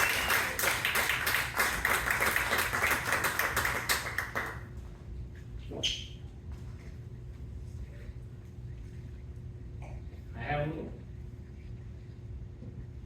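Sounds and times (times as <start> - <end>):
audience clapping: 0.0 - 4.7.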